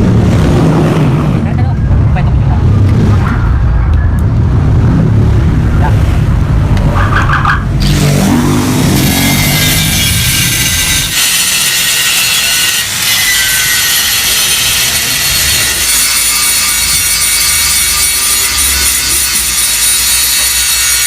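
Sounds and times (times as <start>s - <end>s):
angle grinder cutting steel: 7.8s - 21.0s.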